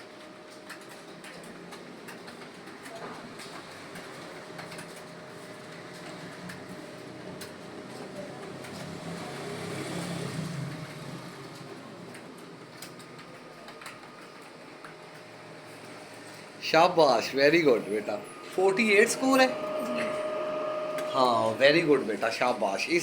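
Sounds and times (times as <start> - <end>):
keyboard keys clicking: 11.6 - 15.3
steady room hum: 11.8 - 23.0.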